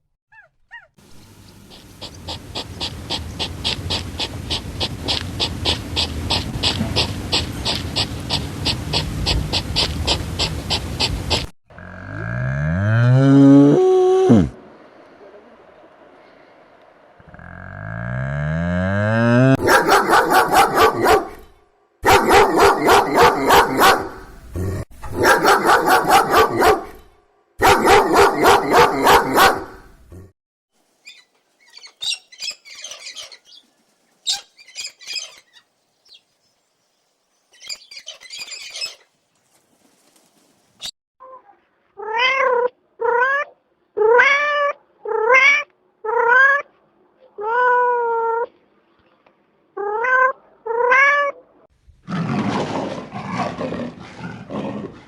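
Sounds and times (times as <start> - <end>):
loud rapidly pulsing animal call: 1.7 - 11.5.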